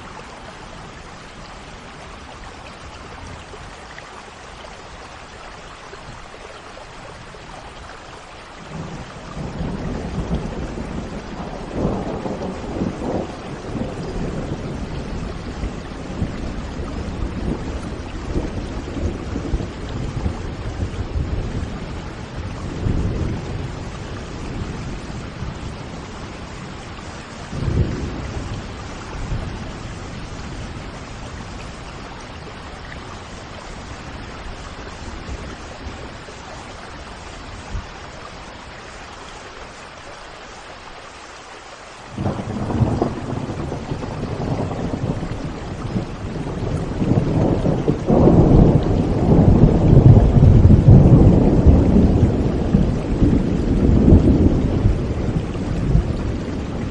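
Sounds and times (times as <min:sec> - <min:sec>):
steady rain: 0:00.0 - 0:56.9
thunder rumbling: 0:08.7 - 0:38.0, 0:42.1 - 0:56.9.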